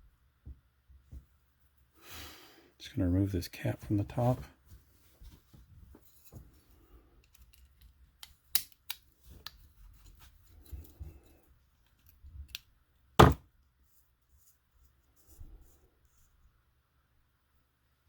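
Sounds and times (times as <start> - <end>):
loud knock: 13.2 - 13.4.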